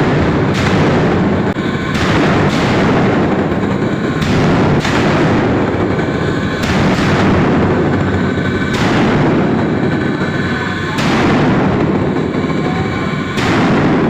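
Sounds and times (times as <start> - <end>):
welding arc crackling and buzzing: 0.0 - 13.6.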